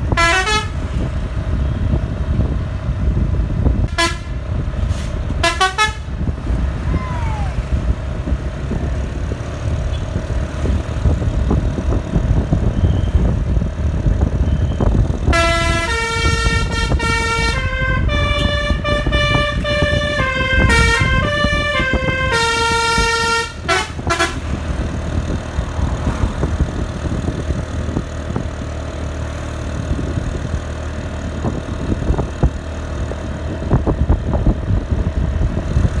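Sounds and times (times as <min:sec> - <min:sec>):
bus horn playing a melody: 0:00.0 - 0:02.6, 0:03.7 - 0:06.4, 0:15.1 - 0:25.3
bus engine rumbling: 0:00.0 - 0:36.0.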